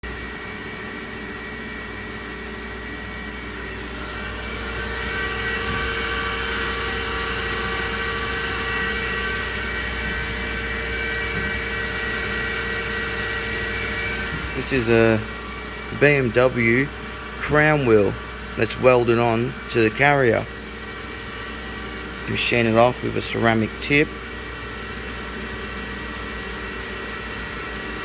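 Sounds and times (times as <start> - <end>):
machining centre whining: 0.1 - 28.0.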